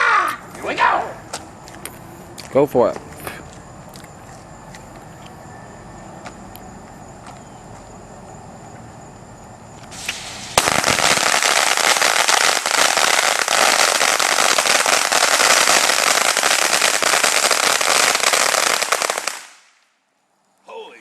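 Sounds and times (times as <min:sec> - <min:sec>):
firecrackers going off: 0:09.9 - 0:19.9.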